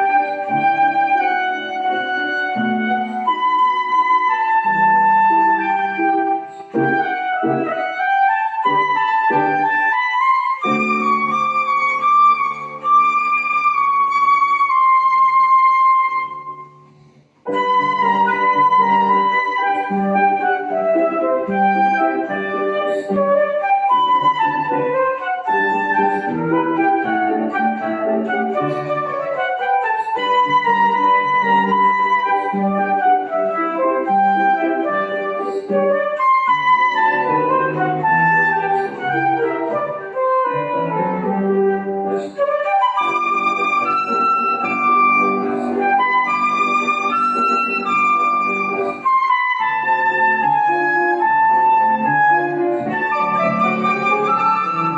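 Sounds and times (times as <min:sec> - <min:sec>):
flute waltz with piano: 0:00.0 - 0:54.9.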